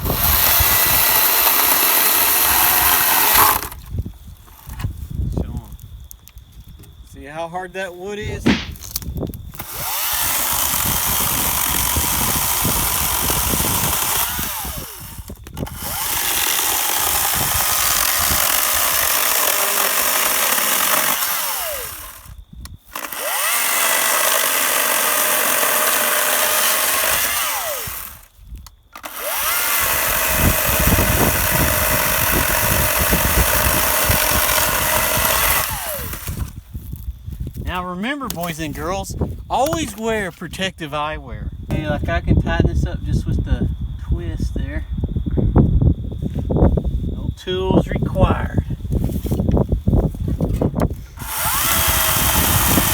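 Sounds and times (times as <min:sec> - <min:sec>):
electric chainsaw cutting wood: 0:00.0 - 0:03.8, 0:09.6 - 0:28.3, 0:29.0 - 0:36.6, 0:51.1 - 0:52.9.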